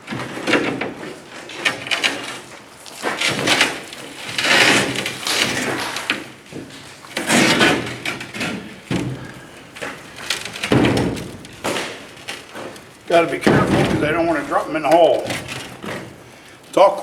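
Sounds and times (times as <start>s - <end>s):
steel plates scraping and clanking: 7.2s - 16.4s.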